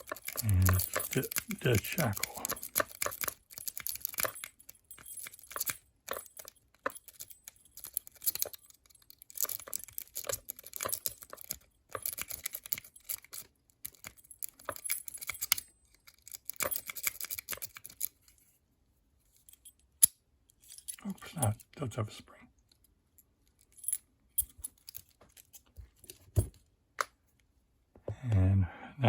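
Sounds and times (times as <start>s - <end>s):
lock pick raking padlock: 0.0s - 18.4s.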